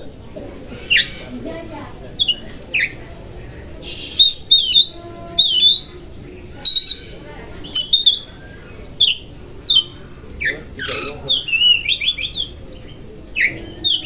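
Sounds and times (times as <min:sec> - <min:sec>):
bird singing whistled notes: 0:03.8 - 0:06.0, 0:06.6 - 0:14.0.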